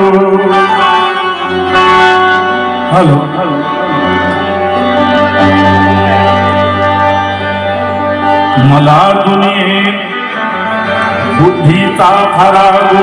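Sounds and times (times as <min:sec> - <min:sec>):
instrumental music over drone: 0:00.0 - 0:13.0.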